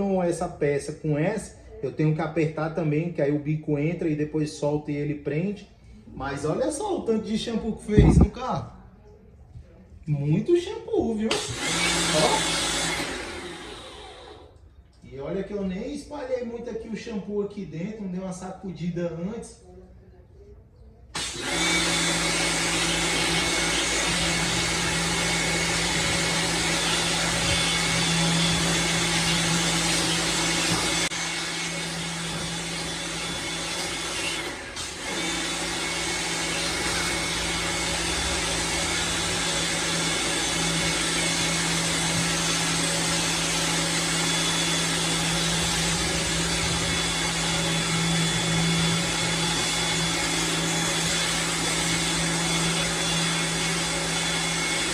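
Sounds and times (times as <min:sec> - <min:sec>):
pressure washer motor humming: 0:11.3 - 0:14.5, 0:21.2 - 0:54.9.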